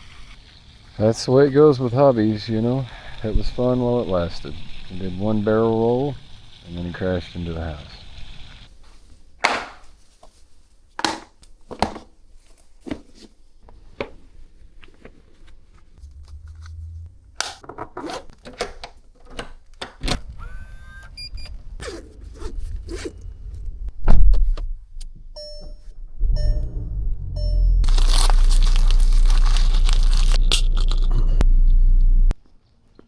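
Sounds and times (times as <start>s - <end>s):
low rumble: 16.0s - 17.7s, 20.2s - 32.4s
short repeated tones: 25.4s - 28.0s.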